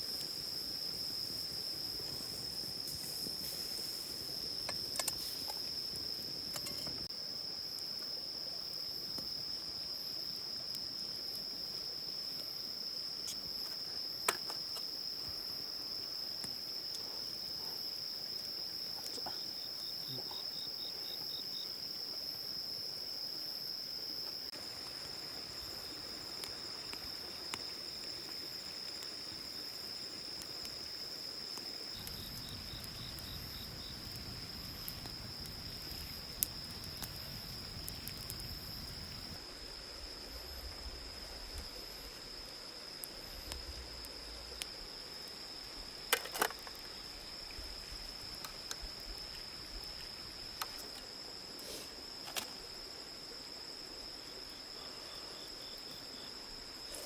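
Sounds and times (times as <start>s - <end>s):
insects trilling: 0.0s - 57.0s
insect pulsed chirps: 23.3s - 39.4s.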